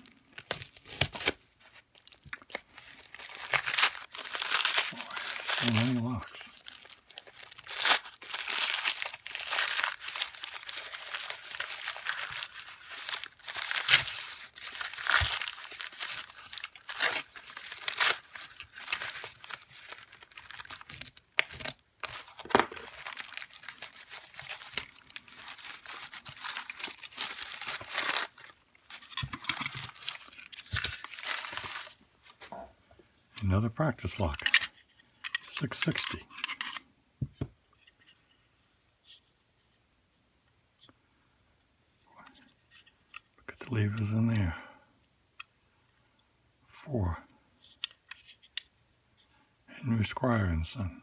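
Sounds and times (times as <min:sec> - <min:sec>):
packing material crinkling and tearing: 0:00.0 - 0:32.6.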